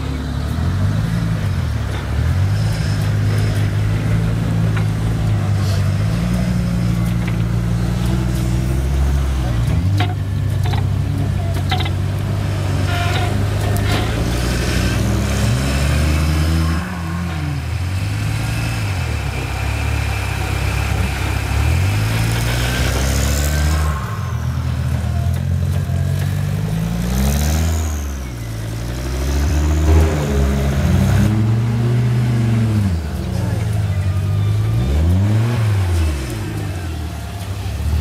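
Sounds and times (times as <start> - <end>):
off-road buggy engine revving: 0.0 - 38.0
high rising turbo whistle: 16.0 - 20.5.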